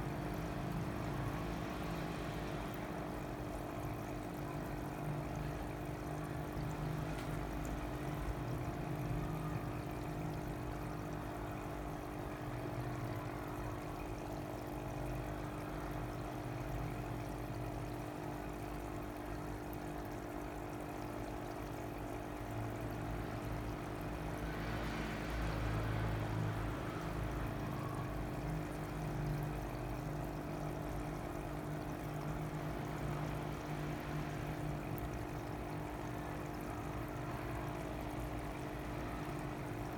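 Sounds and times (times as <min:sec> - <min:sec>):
aquarium pumps humming: 0:00.0 - 0:39.9
water pouring into fish tanks: 0:00.0 - 0:39.9.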